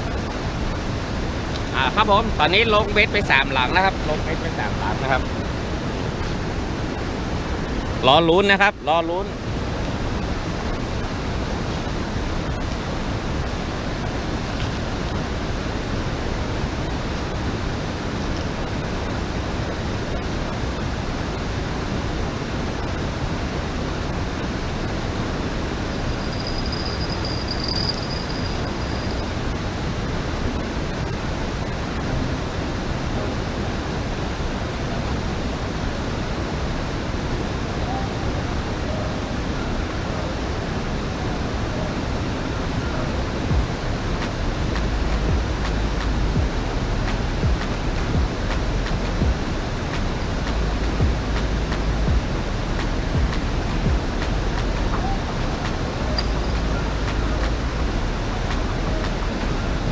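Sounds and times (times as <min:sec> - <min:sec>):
river water rushing over weir: 0:00.0 - 0:59.9
faint high tone: 0:25.9 - 0:29.4, 0:32.0 - 0:34.0, 0:37.8 - 0:40.4, 0:54.9 - 0:57.7.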